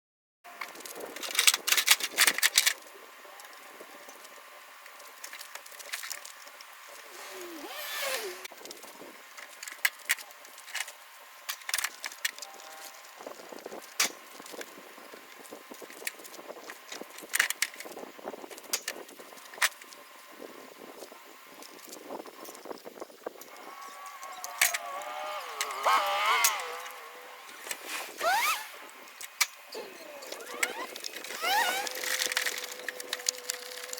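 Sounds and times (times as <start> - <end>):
short gliding squeak: 27.8 - 28.8, 29.8 - 32.9
hand tools clicking and clattering: 29.2 - 33.9.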